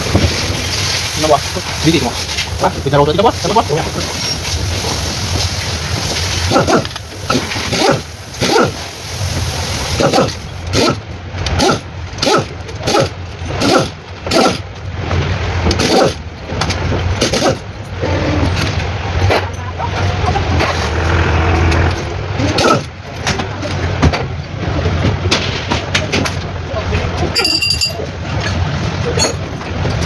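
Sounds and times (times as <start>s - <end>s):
steady low hum: 19.8s - 23.1s.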